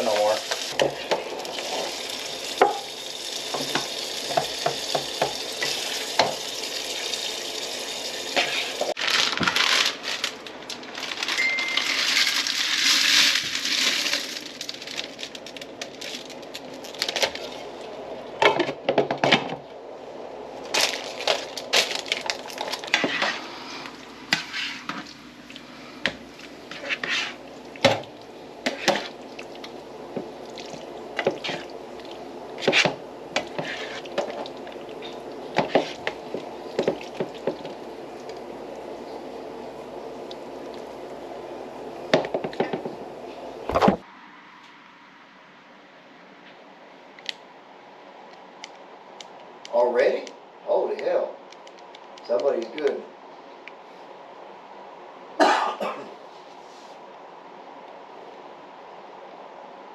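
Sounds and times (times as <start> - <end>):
food sizzling in a skillet: 0.0 - 9.0.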